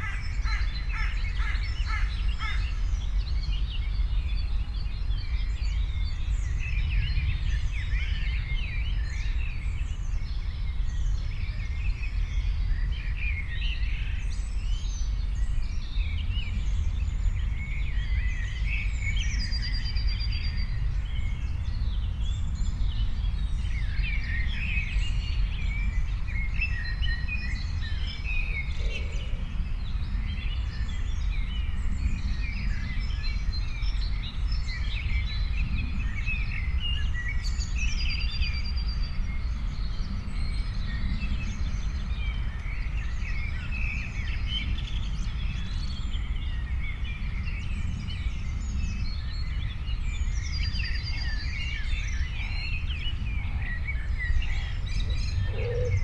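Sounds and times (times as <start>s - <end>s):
songbirds chirping: 0.0s - 56.0s
steady low rumble: 50.1s - 56.0s.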